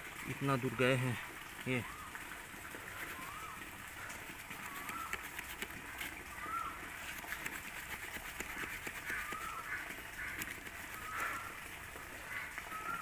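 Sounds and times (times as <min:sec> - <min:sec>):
bird whistling: 0:03.0 - 0:03.6, 0:04.6 - 0:05.2, 0:06.4 - 0:06.8, 0:09.2 - 0:09.6
saw rasping through branch: 0:04.2 - 0:11.4.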